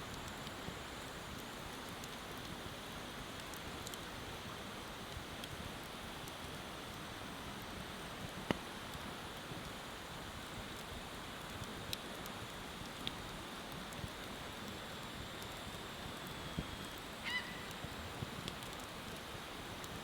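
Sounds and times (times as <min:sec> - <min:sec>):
wood fire crackling and popping: 0:00.1 - 0:20.0
honking bird call: 0:17.2 - 0:17.7.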